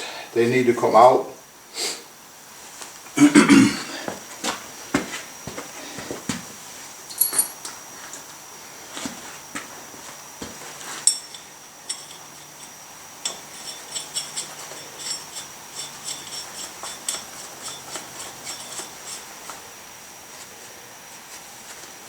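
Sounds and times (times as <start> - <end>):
metal lug nuts clinking: 7.1 - 7.7, 11.0 - 19.0.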